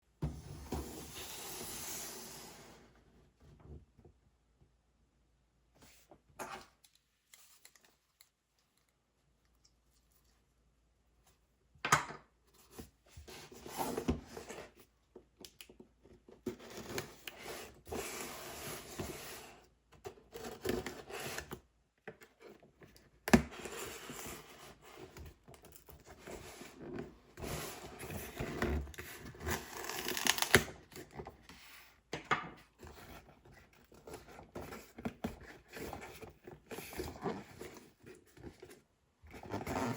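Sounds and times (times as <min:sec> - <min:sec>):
packaging crinkling and tearing: 0:29.5 - 0:30.7.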